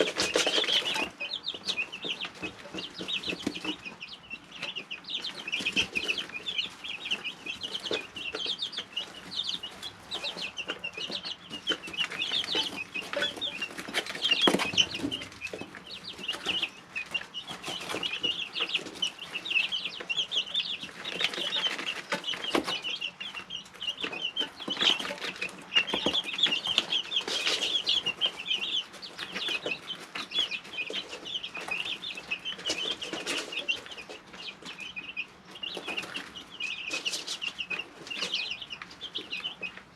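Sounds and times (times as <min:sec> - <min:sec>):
chicks peeping: 0:00.0 - 0:39.9.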